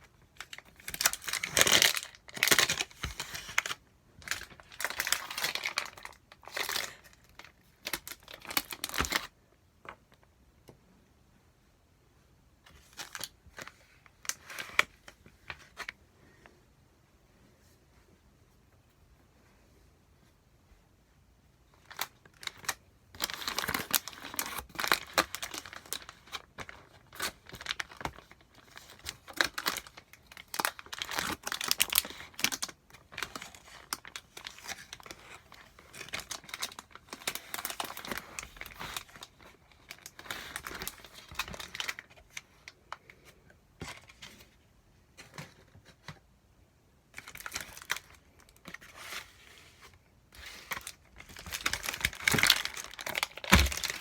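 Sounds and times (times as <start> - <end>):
packaging crinkling and tearing: 0.4 - 9.4, 21.8 - 43.1, 47.2 - 54.0.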